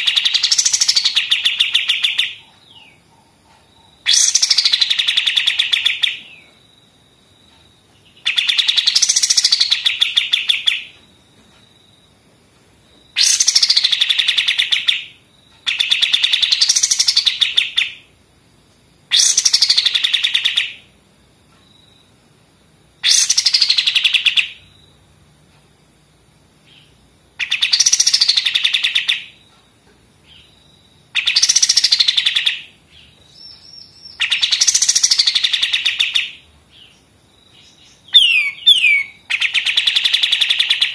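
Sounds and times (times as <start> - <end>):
bird rattling song: 0.0 - 6.4, 8.0 - 11.0, 13.1 - 18.0, 19.1 - 20.8, 23.0 - 24.6, 27.4 - 29.4, 31.1 - 32.7, 33.3 - 36.4, 37.7 - 40.9.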